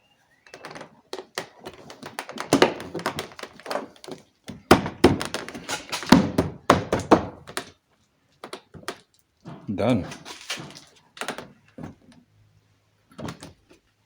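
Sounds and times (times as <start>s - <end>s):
door lock clicking and knocking: 10.6s - 12.2s, 13.1s - 13.7s.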